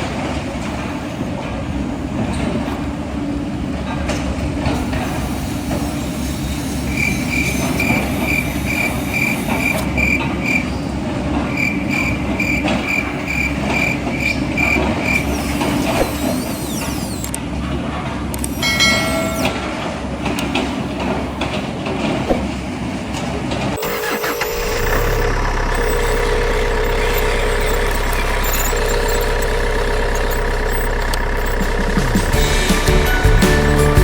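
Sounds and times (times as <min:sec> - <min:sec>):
pitched sliding sound: 0:04.7 - 0:10.0, 0:15.0 - 0:17.4, 0:20.2 - 0:34.0
mechanical din: 0:04.7 - 0:10.2, 0:12.0 - 0:17.4, 0:23.8 - 0:34.0
reversing beeper: 0:23.8 - 0:34.0.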